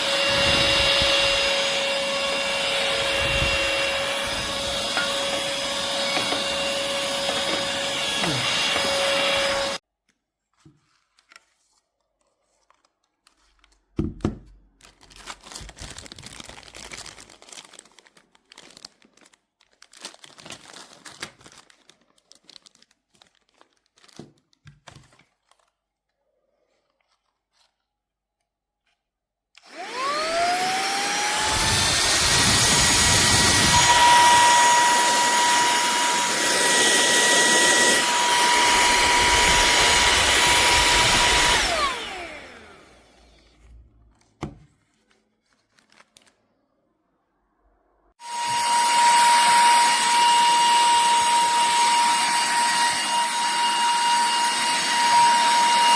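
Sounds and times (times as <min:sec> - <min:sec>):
handheld vacuum cleaner whining: 0:00.0 - 0:09.8, 0:29.6 - 0:43.6, 0:48.2 - 0:55.9.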